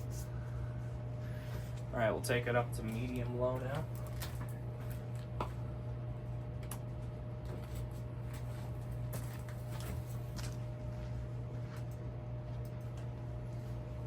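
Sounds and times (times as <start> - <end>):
ceiling fan motor humming: 0.0 - 14.0.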